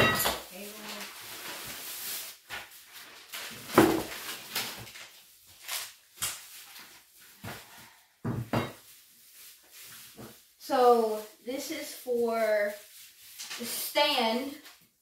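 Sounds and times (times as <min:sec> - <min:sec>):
packaging and parts knocking: 0:03.3 - 0:05.1.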